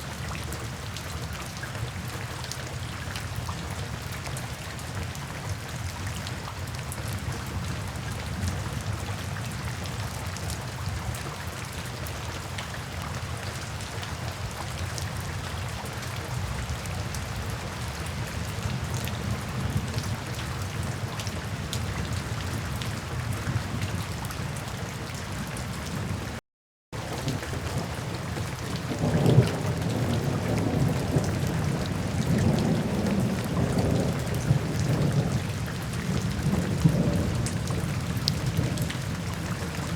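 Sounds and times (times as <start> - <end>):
rain falling: 0.0 - 26.4, 27.0 - 39.9
thunder rumbling: 27.1 - 39.1.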